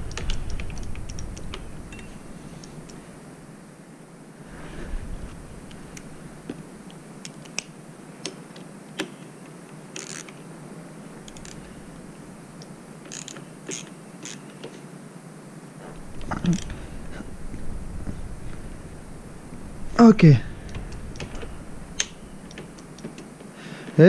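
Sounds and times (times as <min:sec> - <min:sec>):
hand tools clicking: 0:12.6 - 0:14.4.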